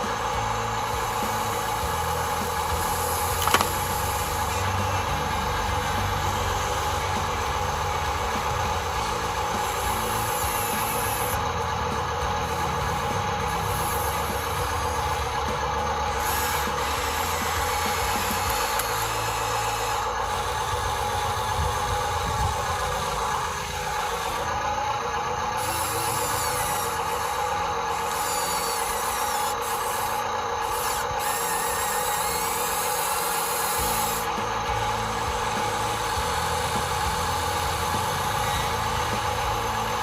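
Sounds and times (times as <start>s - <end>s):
small electric motors whining: 0.0s - 40.0s.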